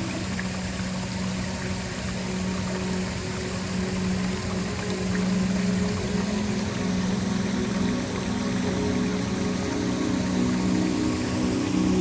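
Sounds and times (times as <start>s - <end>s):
low ambient music drone: 0.0s - 12.0s
waterfall rushing: 0.0s - 12.0s.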